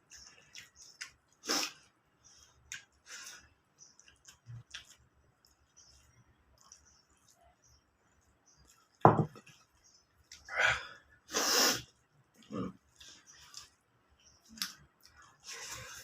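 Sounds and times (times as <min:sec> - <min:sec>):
person chewing: 0:00.0 - 0:07.4, 0:12.4 - 0:16.0
person hissing breaths and sniffs: 0:01.4 - 0:01.9, 0:10.5 - 0:11.9.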